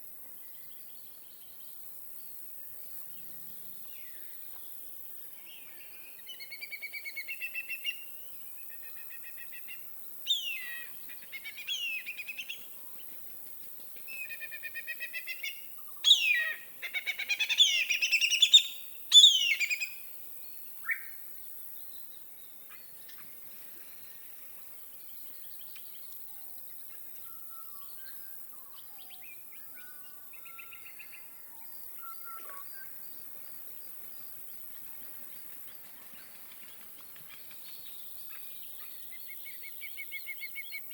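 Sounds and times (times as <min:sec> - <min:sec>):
songbirds singing trills: 0:05.4 - 0:13.2, 0:13.8 - 0:34.5, 0:35.7 - 0:40.9.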